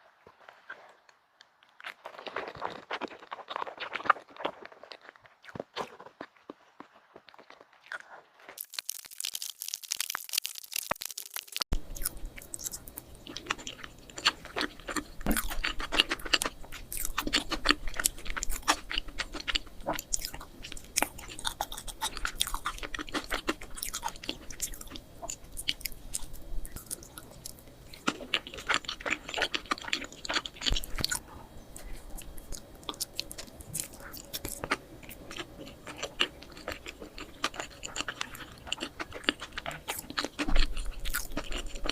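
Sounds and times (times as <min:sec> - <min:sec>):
chewing cake close up: 0:00.2 - 0:41.9
faint low hum: 0:11.7 - 0:41.9.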